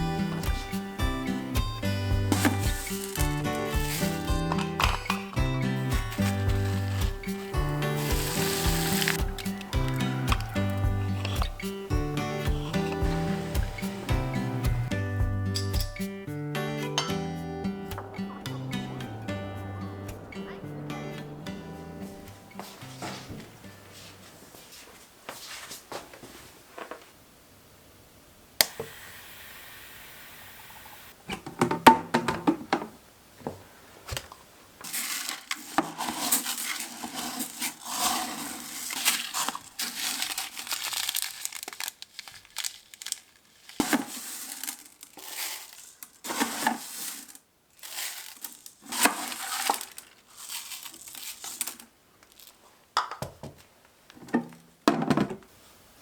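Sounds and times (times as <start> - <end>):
crinkling and rustling: 0.0 - 16.2, 19.9 - 27.2, 31.2 - 55.9
steady hiss: 0.0 - 16.7, 18.5 - 31.3.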